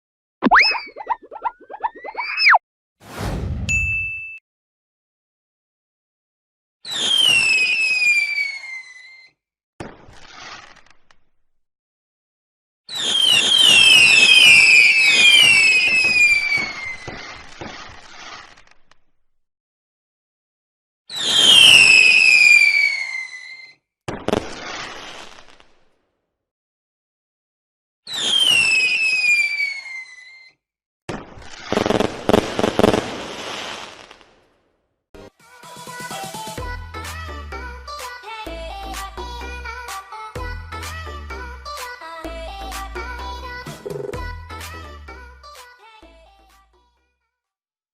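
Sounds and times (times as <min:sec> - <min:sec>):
fireworks whistles falling in pitch: 0:06.8 - 0:09.2, 0:12.9 - 0:18.3, 0:21.1 - 0:23.7, 0:28.1 - 0:30.4
fireworks crackling and popping: 0:06.9 - 0:08.8, 0:09.8 - 0:11.3, 0:12.9 - 0:19.2, 0:21.1 - 0:23.0, 0:24.1 - 0:26.0, 0:28.1 - 0:30.0, 0:31.1 - 0:34.7
firework bang: 0:31.1 - 0:34.5.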